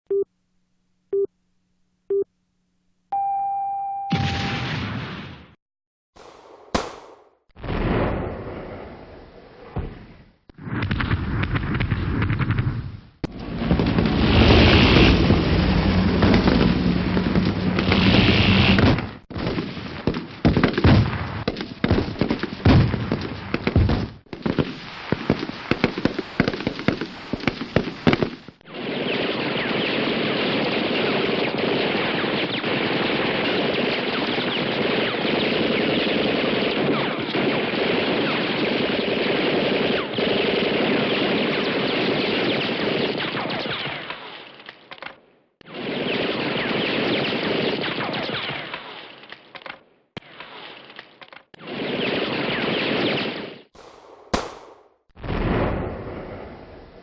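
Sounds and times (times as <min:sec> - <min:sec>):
rapid gunfire crackle: 0:06.2 - 0:08.8, 0:10.6 - 0:55.8
gunshots and bursts: 0:06.2 - 0:08.9, 0:16.1 - 0:55.2.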